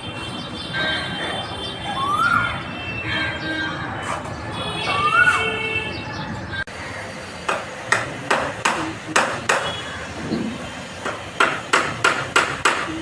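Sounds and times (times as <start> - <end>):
sharp knocks: 7.5 - 9.8, 11.0 - 13.0.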